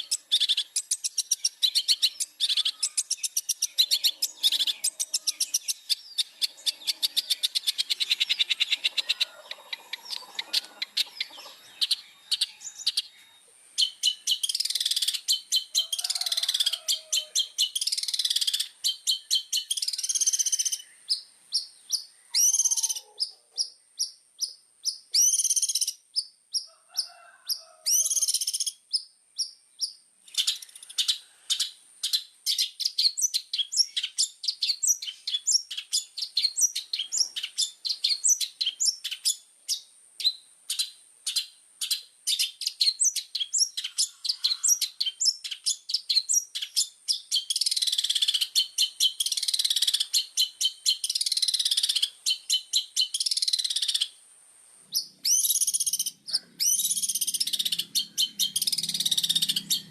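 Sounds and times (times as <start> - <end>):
fast sharp bird chirping: 0.0 - 13.1, 13.8 - 24.2, 54.9 - 59.9
bird singing rasping bursts: 0.0 - 26.7, 27.9 - 54.2, 54.9 - 59.9.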